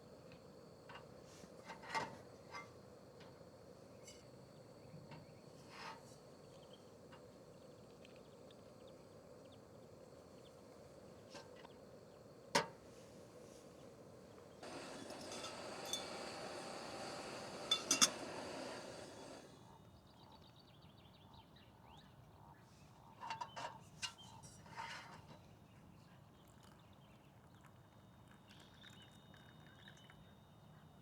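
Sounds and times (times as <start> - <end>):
coffee gear clinking: 14.4 - 19.6, 27.5 - 30.8.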